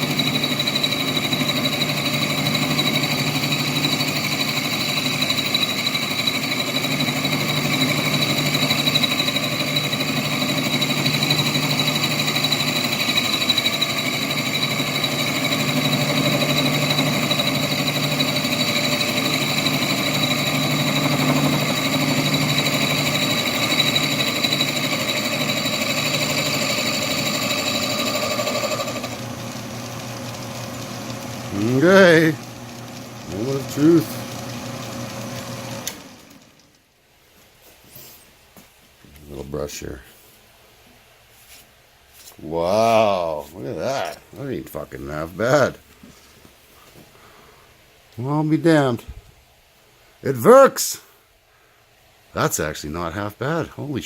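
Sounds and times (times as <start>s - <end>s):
end mill cutting metal: 0.0s - 36.5s
metal lathe machine whine: 0.0s - 36.5s.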